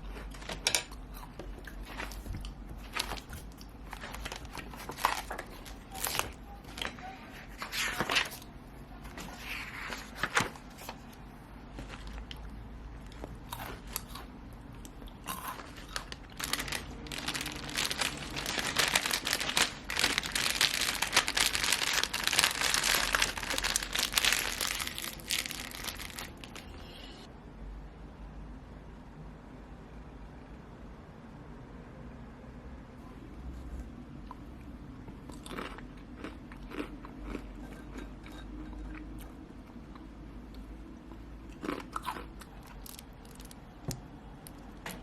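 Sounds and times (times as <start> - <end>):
packaging crinkling and crumpling: 1.8 - 14.2, 15.3 - 26.9, 42.1 - 45.0.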